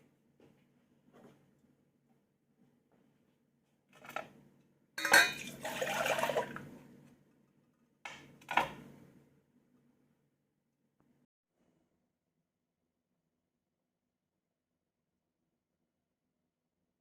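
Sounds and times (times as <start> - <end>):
dishes clattering: 5.0 - 5.7.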